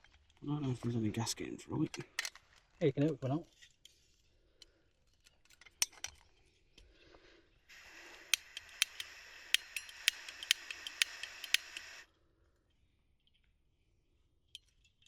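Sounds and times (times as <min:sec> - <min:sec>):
gas hissing from burner: 0:07.7 - 0:12.0
igniter clicking: 0:08.1 - 0:12.0.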